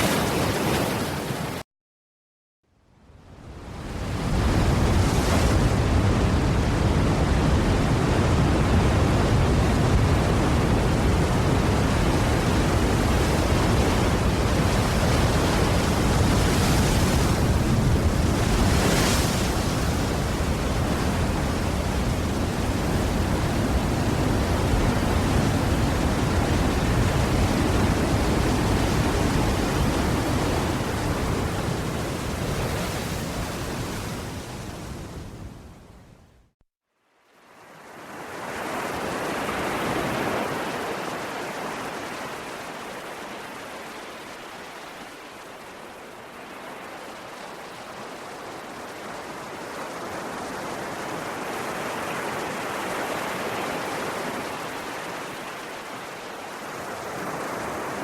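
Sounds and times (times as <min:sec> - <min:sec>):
ocean waves washing: 0:00.0 - 0:01.6, 0:03.6 - 0:35.7, 0:37.5 - 0:58.0
waves breaking hiss: 0:00.0 - 0:01.6.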